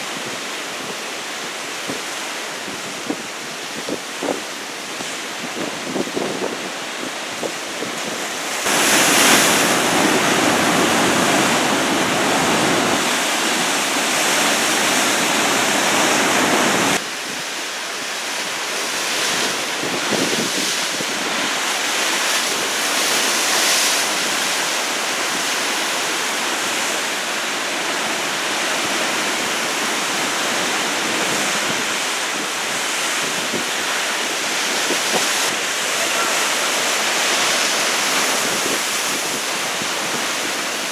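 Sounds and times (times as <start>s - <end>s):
surf breaking and rushing: 1.8s - 17.0s
wind on microphone: 1.9s - 17.4s, 19.3s - 21.5s, 38.0s - 40.9s.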